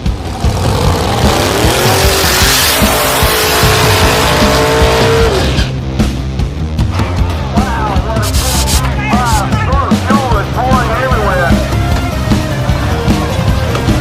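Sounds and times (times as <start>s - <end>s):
car engine at high revs: 0.0s - 5.8s
background music with beat: 0.0s - 14.0s.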